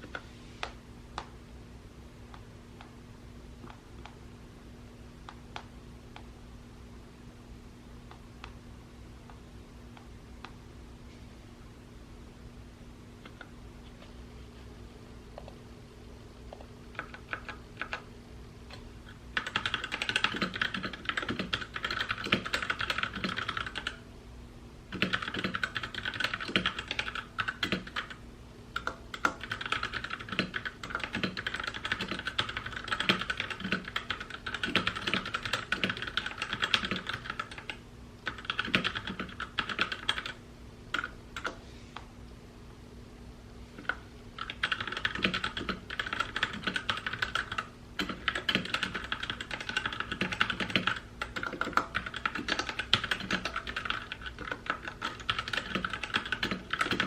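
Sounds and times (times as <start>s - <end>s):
mechanical keyboard typing: 16.9s - 18.1s, 19.4s - 24.0s, 24.9s - 28.2s, 28.8s - 41.6s, 43.8s - 57.0s.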